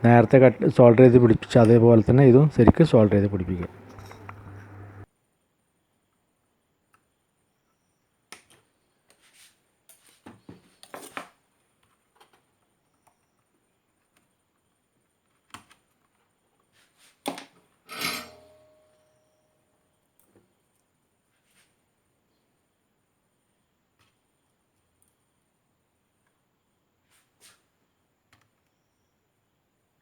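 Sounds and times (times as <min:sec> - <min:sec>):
snipping capacitor leads: 0:00.0 - 0:05.0
hand tools clicking on circuit board: 0:02.7 - 0:05.0
metal tool clinking down: 0:03.6 - 0:04.8, 0:17.9 - 0:18.8.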